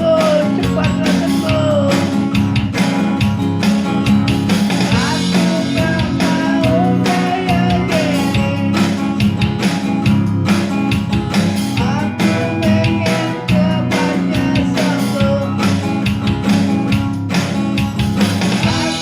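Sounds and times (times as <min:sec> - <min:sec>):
guitar song with steady beat: 0:00.0 - 0:19.0.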